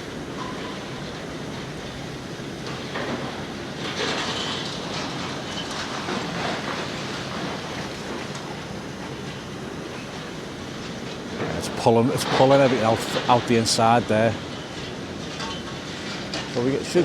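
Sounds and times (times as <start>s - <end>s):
excavator grinding and clattering: 2.6s - 8.6s.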